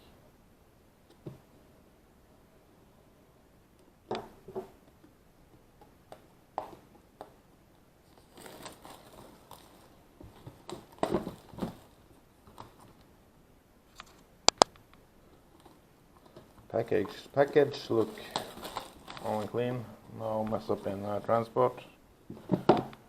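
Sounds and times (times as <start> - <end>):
plastic packaging crinkling: 8.0 - 12.8, 17.3 - 19.8.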